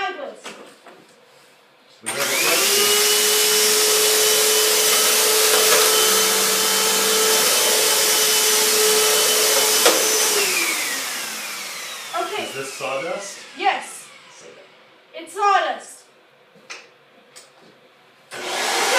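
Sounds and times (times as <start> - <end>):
vacuum cleaner motor whine: 2.1 - 14.9, 18.3 - 18.9.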